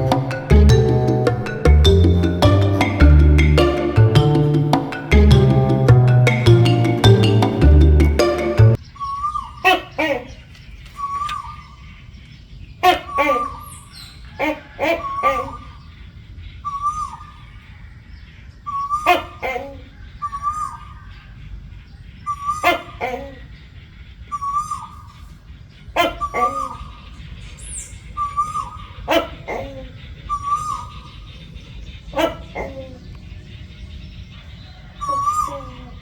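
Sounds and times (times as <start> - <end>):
gecko barking calls: 12.8 - 16.0, 18.7 - 21.4, 22.2 - 36.0.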